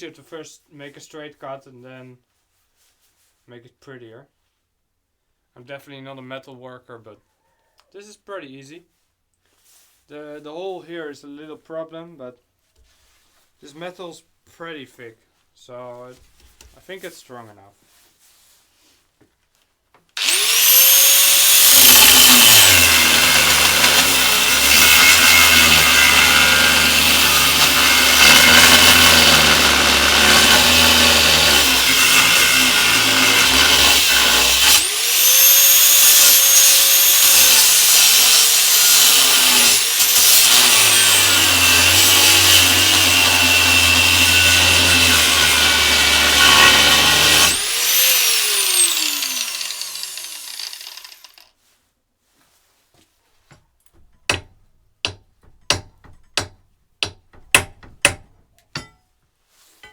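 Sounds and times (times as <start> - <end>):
angle grinder cutting steel: 20.2 - 51.5.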